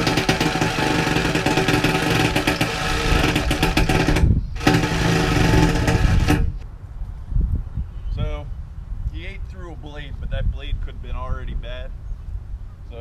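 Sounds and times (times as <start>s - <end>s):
reciprocating saw cutting metal: 0.0s - 6.6s.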